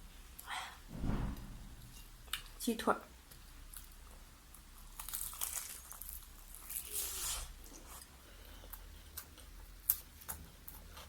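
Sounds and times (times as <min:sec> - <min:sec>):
fried chicken crunching: 0:03.7 - 0:08.0.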